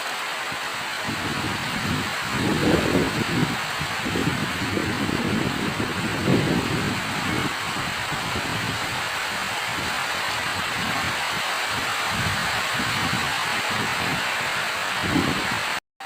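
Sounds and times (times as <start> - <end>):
heavy rain falling: 0.0 - 15.8.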